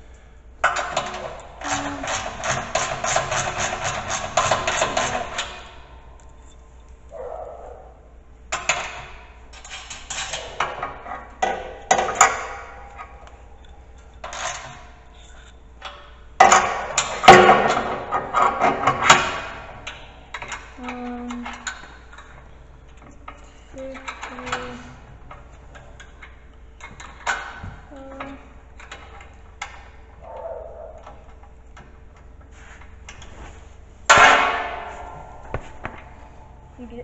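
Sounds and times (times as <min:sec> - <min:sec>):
metal clanks and knocks: 0:00.6 - 0:06.6, 0:08.5 - 0:33.4, 0:34.0 - 0:37.0
metal clatter: 0:00.6 - 0:06.8, 0:33.0 - 0:37.0.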